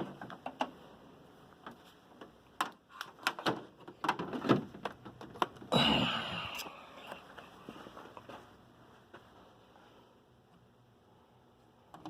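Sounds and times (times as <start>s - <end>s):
handling knocks and clicks: 1.6s - 5.7s.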